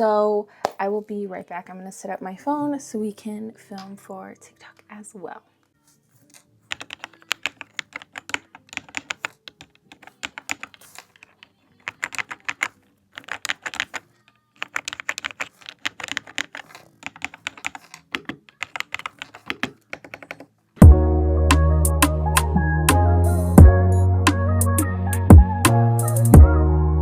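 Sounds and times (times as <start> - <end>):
mechanical keyboard key clicks: 6.7 - 14.0, 14.6 - 20.4.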